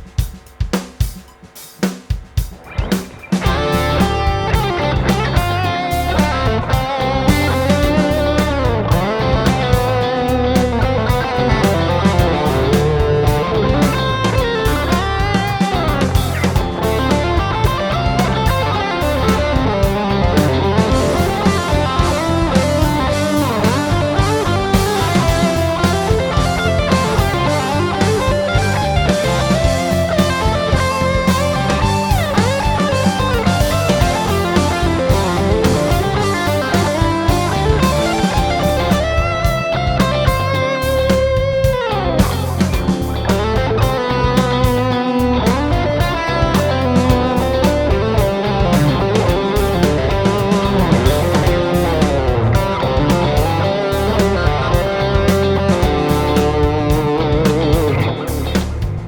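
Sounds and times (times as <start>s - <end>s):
backing track drums and bass: 0.0s - 59.0s
electric guitar lead solo: 3.4s - 58.5s.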